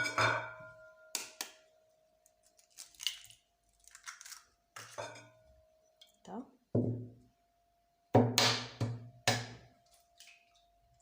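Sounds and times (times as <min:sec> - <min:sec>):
eggshells crackling: 0:02.4 - 0:04.6.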